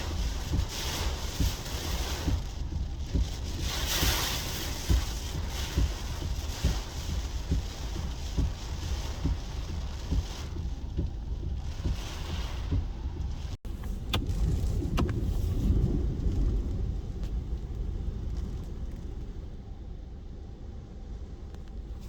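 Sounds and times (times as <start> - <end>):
rushing wind hiss: 0.0 - 8.6
wind buffeting microphone: 0.0 - 19.6
low wind rumble: 0.0 - 22.0.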